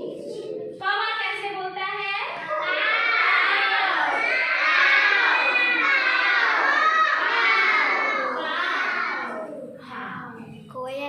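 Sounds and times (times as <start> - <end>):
children calling out: 2.4 - 9.8.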